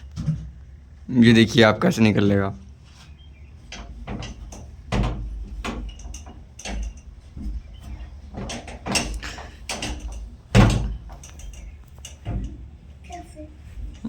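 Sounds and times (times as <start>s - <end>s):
door rattling against latch: 3.7s - 12.8s
door bang: 9.8s - 11.1s.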